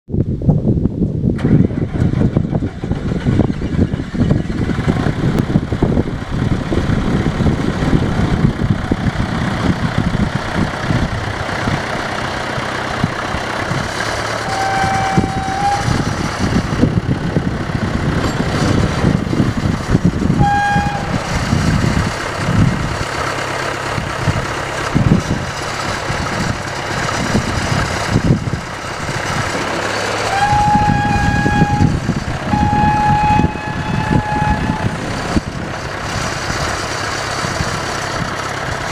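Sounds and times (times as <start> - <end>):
diesel engine churning: 1.3 - 38.9.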